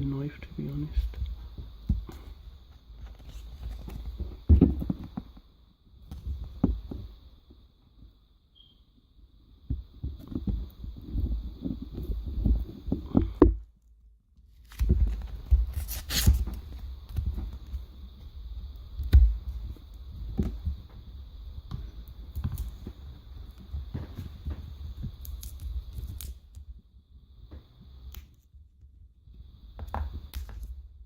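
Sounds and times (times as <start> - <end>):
plastic packaging rustling: 14.6 - 17.0.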